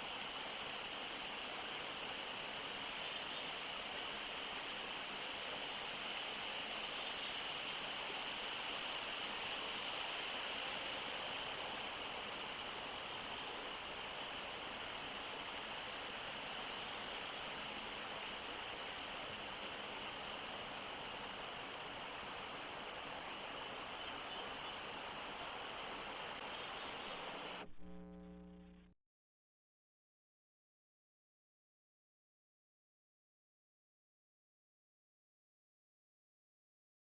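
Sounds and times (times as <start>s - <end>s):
insects droning: 0.1s - 28.8s.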